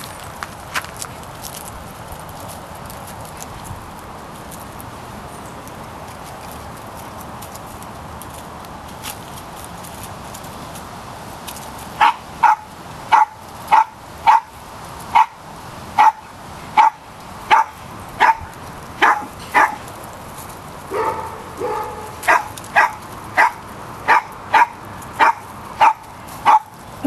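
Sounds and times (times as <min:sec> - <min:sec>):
small dog barking: 0:12.0 - 0:14.5, 0:15.1 - 0:15.4, 0:16.0 - 0:19.8, 0:20.9 - 0:26.7.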